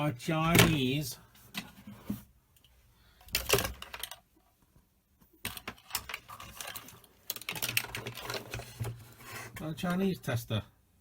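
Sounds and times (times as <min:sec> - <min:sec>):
plastic instruments clicking and knocking: 0:03.2 - 0:04.5, 0:05.4 - 0:10.0.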